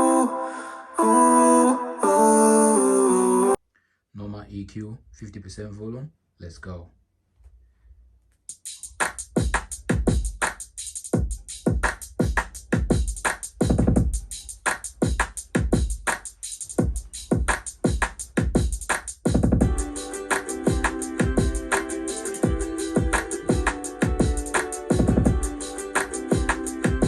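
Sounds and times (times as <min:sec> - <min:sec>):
crisp hi-hats: 0:08.4 - 0:27.0
deep kick drums: 0:11.2 - 0:14.2, 0:16.8 - 0:20.0, 0:20.7 - 0:21.7, 0:22.4 - 0:25.6, 0:26.3 - 0:27.0.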